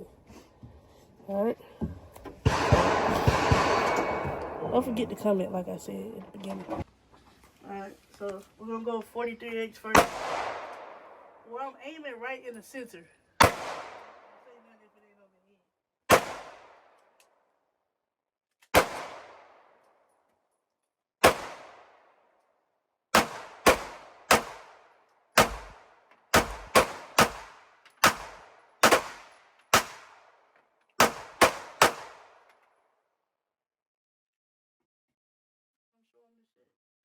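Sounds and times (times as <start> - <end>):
pistol shots echoing: 2.4 - 5.1, 10.0 - 11.4, 13.4 - 14.5, 16.1 - 16.9, 18.8 - 19.7, 21.2 - 22.1, 23.2 - 30.4, 31.0 - 32.4.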